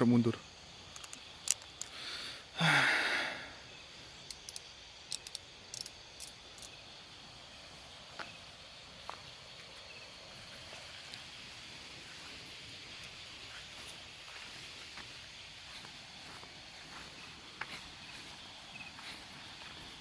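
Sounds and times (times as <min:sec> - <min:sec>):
crickets chirring: 0:00.0 - 0:20.0
faint high ticks: 0:00.9 - 0:02.0, 0:04.2 - 0:06.8, 0:11.0 - 0:11.3
loud breathy hiss: 0:01.8 - 0:04.2, 0:17.2 - 0:20.0.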